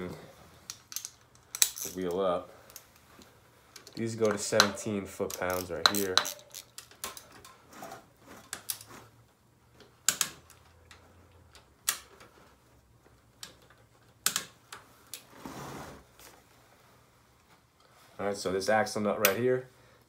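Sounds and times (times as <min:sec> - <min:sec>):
hand tools clicking on metal: 0:00.7 - 0:02.9, 0:03.8 - 0:07.6.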